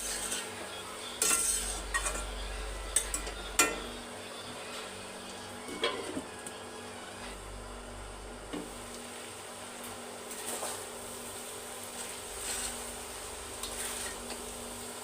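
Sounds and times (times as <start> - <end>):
okra sizzling in a pan: 0.0 - 3.1, 8.6 - 15.0.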